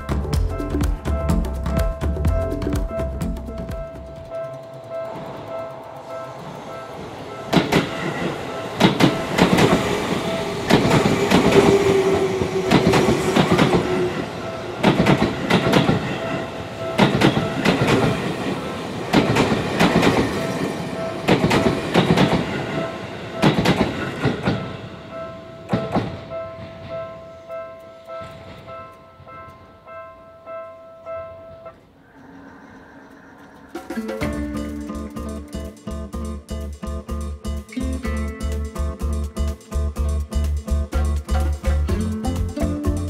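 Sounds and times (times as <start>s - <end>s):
train wheels clacking on rails: 3.7s - 29.7s
level crossing warning bell: 3.8s - 32.0s
train falling whine: 4.3s - 29.8s.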